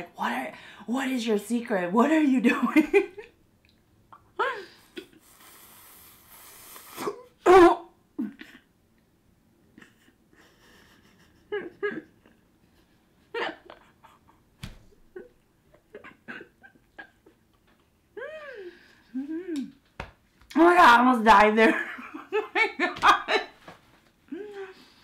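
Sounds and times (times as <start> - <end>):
woman slurping noodles: 5.2 - 7.2.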